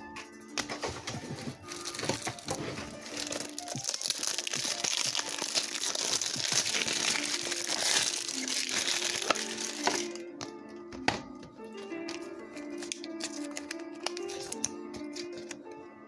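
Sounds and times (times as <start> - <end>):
plastic wrapping crinkling: 1.2 - 10.2, 12.1 - 15.6.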